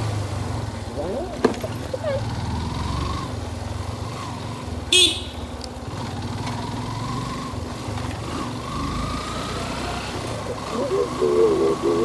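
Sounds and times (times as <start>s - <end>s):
motorcycle engine and road rumble: 0.0s - 12.0s
horn toot: 4.9s - 5.6s.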